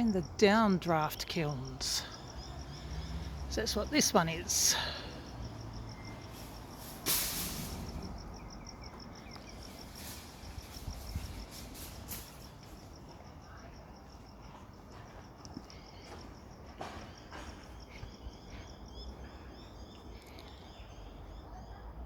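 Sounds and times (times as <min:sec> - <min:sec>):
insect chirping: 0:00.0 - 0:21.8
faint bird chirps: 0:17.0 - 0:22.0.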